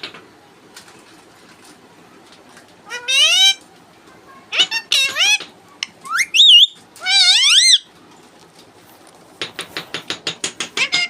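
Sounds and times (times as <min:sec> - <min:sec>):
parrot whistling: 0:06.0 - 0:07.8.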